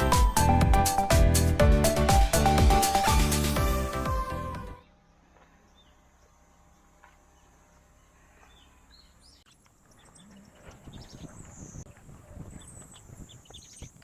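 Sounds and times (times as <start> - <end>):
small birds chirping: 5.4 - 14.0.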